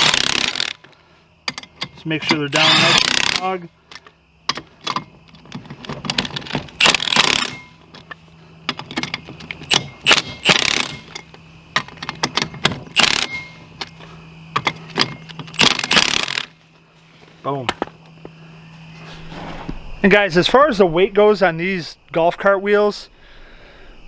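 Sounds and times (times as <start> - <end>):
faint steady hum: 0.0 - 24.0
metallic clicks and knocks: 1.4 - 2.5, 3.9 - 16.4
ratchet wrench clicking: 1.5 - 5.0, 6.2 - 7.8, 8.7 - 13.6, 15.5 - 16.5.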